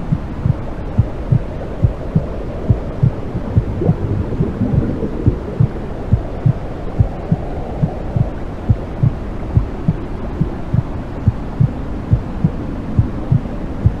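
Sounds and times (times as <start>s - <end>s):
heartbeat thumps: 0.0s - 14.0s
low whooshing noise: 0.0s - 14.0s.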